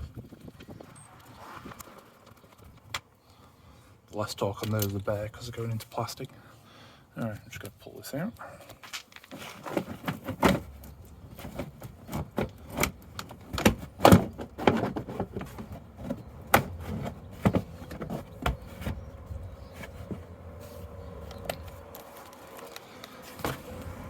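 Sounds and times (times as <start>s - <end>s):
plastic liner knocking and scraping: 9.3s - 20.4s.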